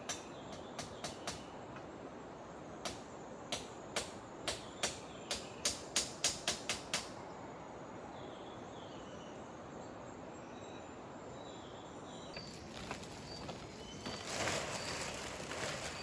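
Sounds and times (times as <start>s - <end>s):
background hiss: 0.0s - 16.0s
rustling: 12.4s - 16.0s.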